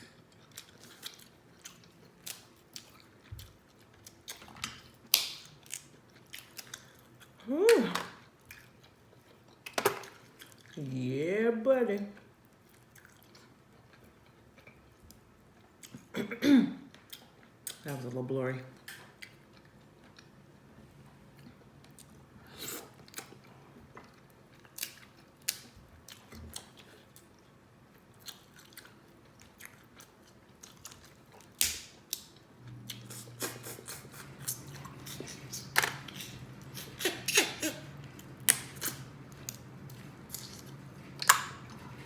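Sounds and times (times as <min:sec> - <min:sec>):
low steady hum: 0:00.0 - 0:42.0
chewing and lip-smacking: 0:00.2 - 0:07.4, 0:08.2 - 0:10.8, 0:12.5 - 0:16.1, 0:22.8 - 0:42.0.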